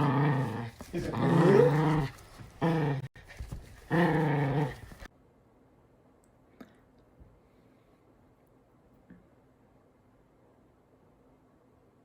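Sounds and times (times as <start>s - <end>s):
dog growling: 0.0s - 3.1s, 3.9s - 5.1s.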